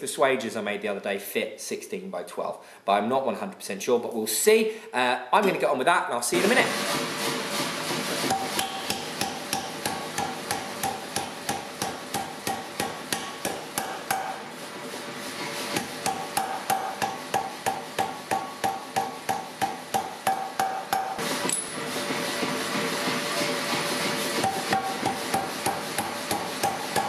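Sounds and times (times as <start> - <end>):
power hammer striking hot steel: 7.6 - 27.0.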